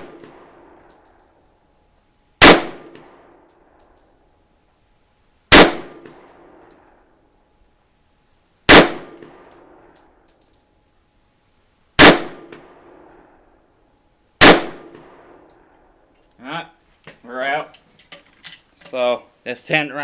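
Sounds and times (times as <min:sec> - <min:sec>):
pistol shots: 0:00.0 - 0:00.8, 0:02.4 - 0:03.3, 0:05.5 - 0:06.6, 0:08.7 - 0:09.9, 0:12.0 - 0:13.1, 0:14.4 - 0:15.4.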